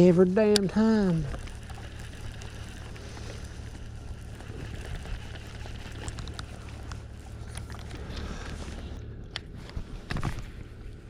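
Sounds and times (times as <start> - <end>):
steady low hum: 0.0 - 11.0
fishing reel clicks: 0.4 - 8.2.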